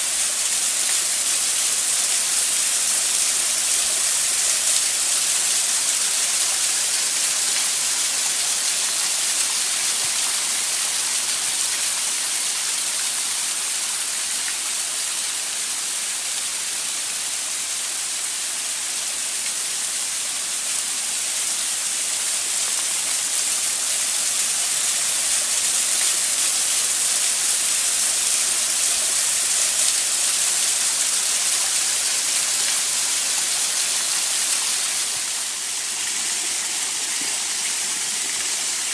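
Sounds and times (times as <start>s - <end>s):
waterfall rushing: 24.0s - 38.9s.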